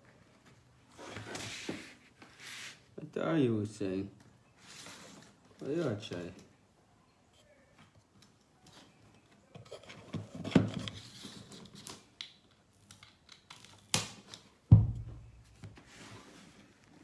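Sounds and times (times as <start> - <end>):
heavy knock: 14.7 - 15.4.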